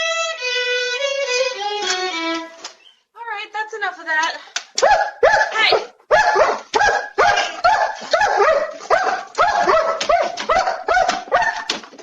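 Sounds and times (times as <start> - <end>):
dog barking: 4.8 - 11.7.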